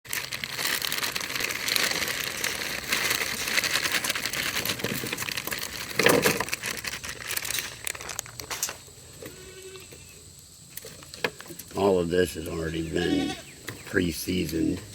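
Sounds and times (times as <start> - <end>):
aluminium foil crinkling: 0.1 - 9.8.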